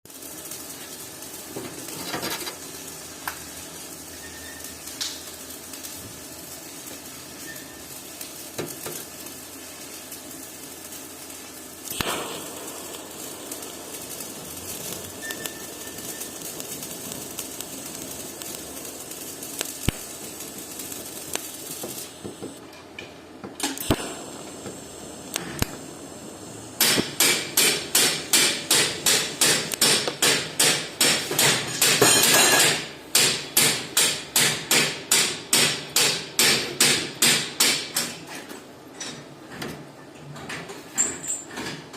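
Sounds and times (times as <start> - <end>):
steady hiss: 0.1 - 22.7, 23.6 - 38.2
hammer striking metal: 26.8 - 38.1.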